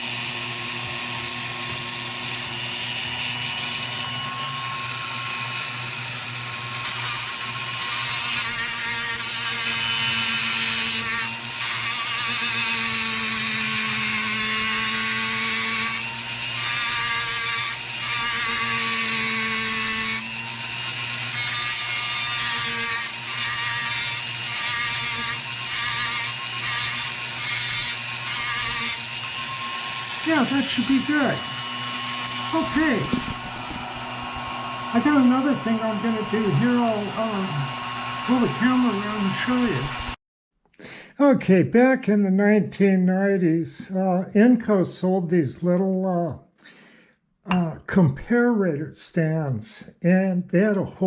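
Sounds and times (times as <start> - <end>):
rotary tool grinding metal: 0.0 - 40.2.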